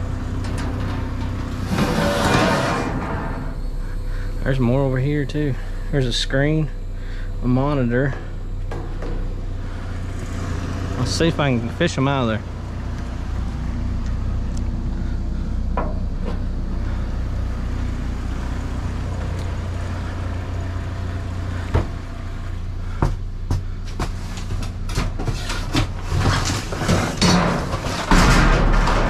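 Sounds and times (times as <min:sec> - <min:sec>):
objects clattering in a dumpster: 0:00.0 - 0:03.9, 0:08.0 - 0:11.4, 0:14.9 - 0:18.2, 0:22.8 - 0:29.0
vehicle engine idling: 0:00.0 - 0:26.8.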